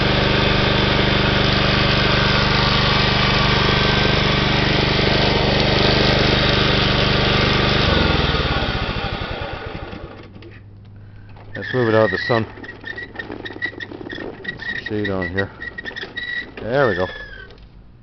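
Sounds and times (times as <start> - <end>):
lawn mower engine running: 0.0 - 18.0.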